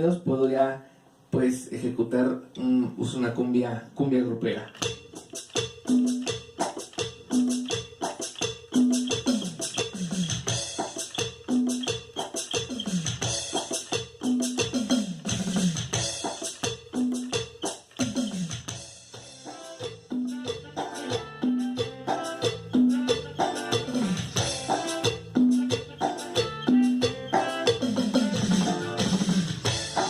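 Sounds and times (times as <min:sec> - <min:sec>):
scraped shaker rhythm: 0:04.6 - 0:30.0
hand-percussion hits: 0:04.7 - 0:30.0.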